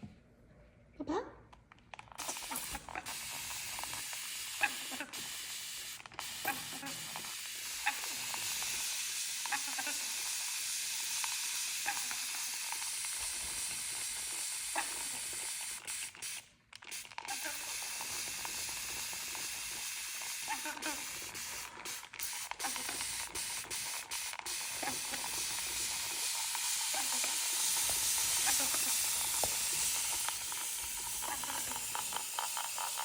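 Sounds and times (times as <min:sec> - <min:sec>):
steady hiss: 0:02.2 - 0:16.5, 0:17.4 - 0:33.0.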